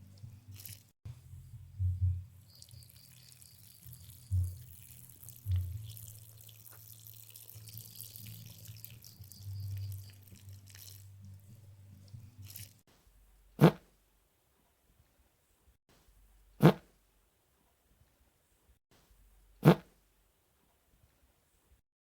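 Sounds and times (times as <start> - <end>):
dripping and splattering: 0.5 - 0.9, 2.3 - 12.8
wet sputtering farts: 2.6 - 11.2, 13.6 - 13.9, 16.6 - 16.9, 19.6 - 19.9.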